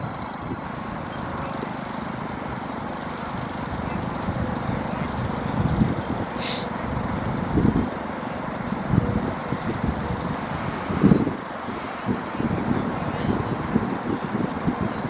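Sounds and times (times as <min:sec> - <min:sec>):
wind buffeting microphone: 0:00.0 - 0:15.0
brief hiss: 0:06.4 - 0:06.8.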